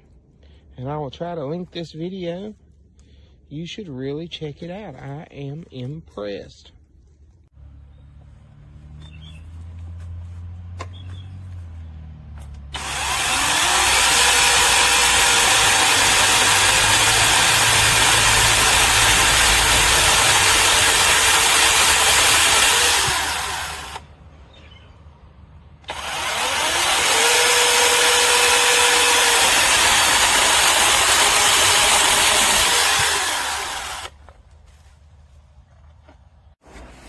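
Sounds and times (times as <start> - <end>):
motor whine: 12.7 - 24.0
electric chainsaw cutting wood: 12.7 - 24.1, 25.8 - 34.2.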